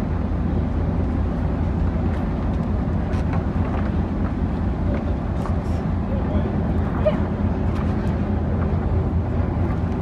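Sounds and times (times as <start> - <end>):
low rumble of moving vehicle: 0.0 - 10.0.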